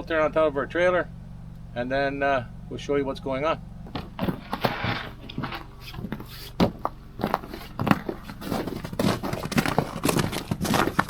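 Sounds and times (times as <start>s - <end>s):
low steady hum: 0.0s - 11.0s
footsteps: 3.8s - 11.0s
wooden boards knocking: 3.8s - 11.0s.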